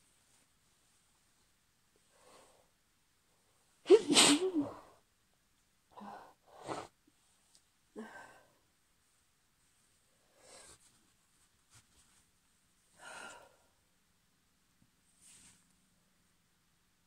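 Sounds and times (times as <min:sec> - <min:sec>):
woman sneezing: 0:03.9 - 0:04.9.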